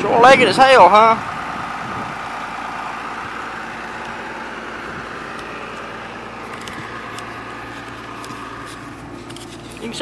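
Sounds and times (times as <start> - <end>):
tractor engine running: 0.0 - 10.0.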